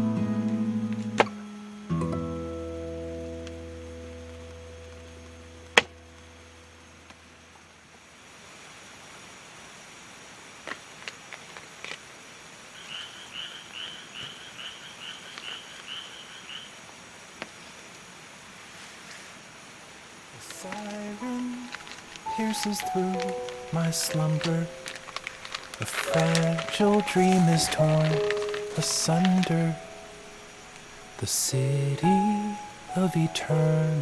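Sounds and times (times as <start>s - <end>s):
frog calling: 12.6s - 16.9s, 20.4s - 34.0s.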